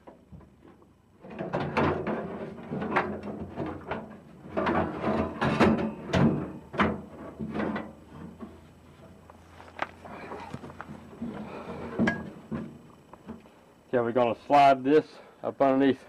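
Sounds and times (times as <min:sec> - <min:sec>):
tools knocking and clattering: 0:01.2 - 0:08.4, 0:10.8 - 0:13.4.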